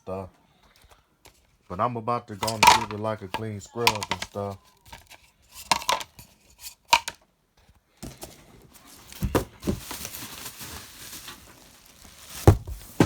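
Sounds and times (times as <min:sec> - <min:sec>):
cardboard rustling and scraping: 0:07.6 - 0:13.0.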